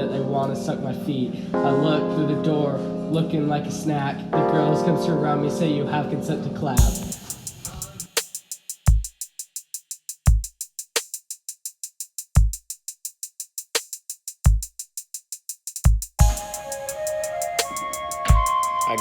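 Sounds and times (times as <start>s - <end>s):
deep kick drums sliding down: 6.8s - 8.0s
rapid ticking hi-hats: 6.8s - 19.0s.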